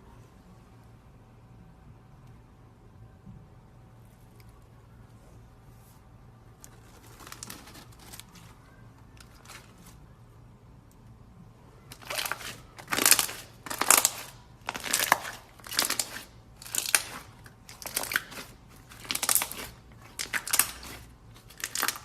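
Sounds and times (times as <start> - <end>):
slime squishing: 6.6 - 10.1, 11.9 - 22.0.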